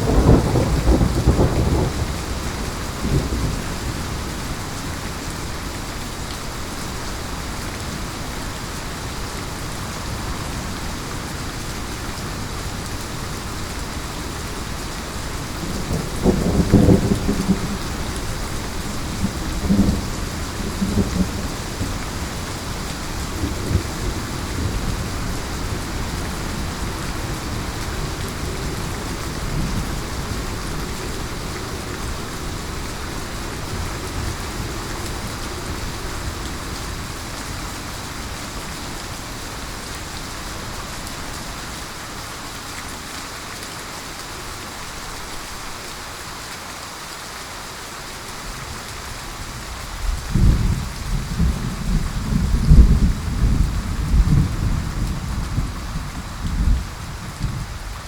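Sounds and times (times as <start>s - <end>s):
thunder rumbling: 0.0s - 4.4s, 14.7s - 38.6s, 50.0s - 58.0s
heavy rain falling: 0.0s - 58.0s.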